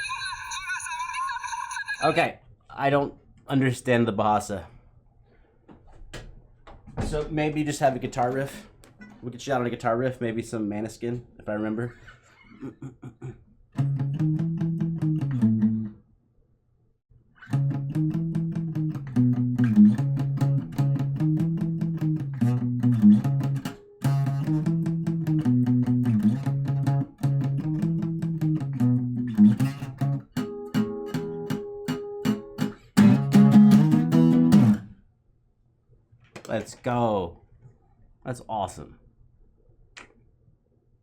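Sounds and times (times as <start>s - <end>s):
guitar playing a low riff: 13.8s - 16.0s, 17.4s - 35.0s.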